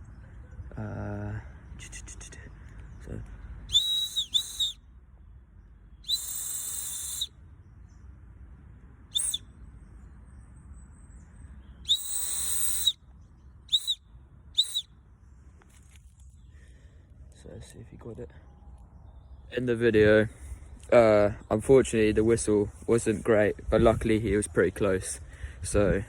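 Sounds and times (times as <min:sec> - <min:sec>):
whistle blasts in morse code: 0:03.7 - 0:04.8, 0:06.1 - 0:07.3, 0:09.2 - 0:09.4, 0:11.9 - 0:13.0, 0:13.7 - 0:14.0, 0:14.6 - 0:14.9.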